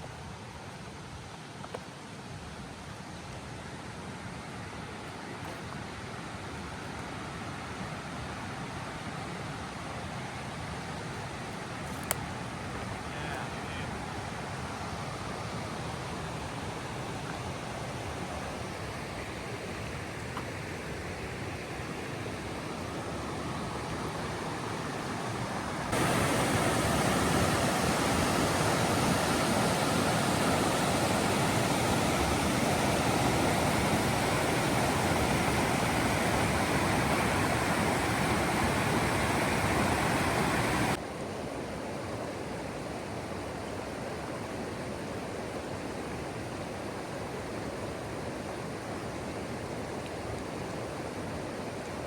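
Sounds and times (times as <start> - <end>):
waterfall rushing: 5.9 - 41.3.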